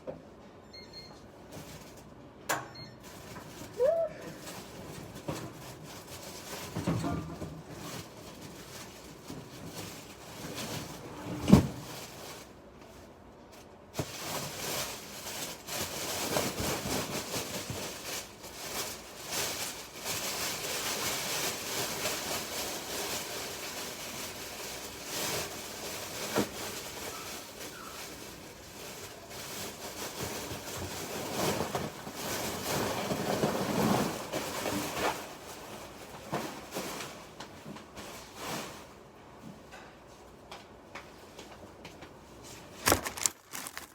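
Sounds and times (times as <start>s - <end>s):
paper shredder shredding paper: 42.8s - 43.9s.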